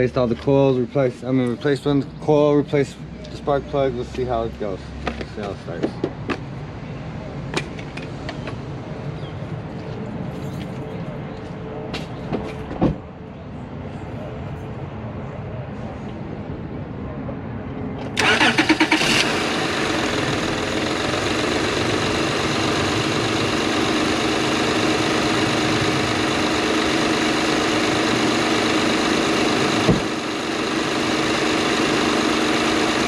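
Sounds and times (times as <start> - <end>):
car engine idling: 18.2 - 33.0
car starter cranking: 18.2 - 33.0.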